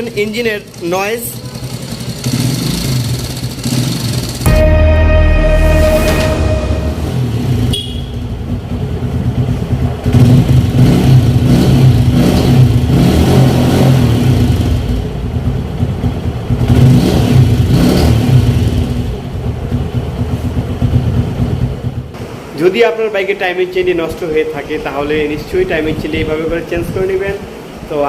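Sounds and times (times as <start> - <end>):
motorcycle engine revving: 0.7 - 4.5, 6.4 - 22.1.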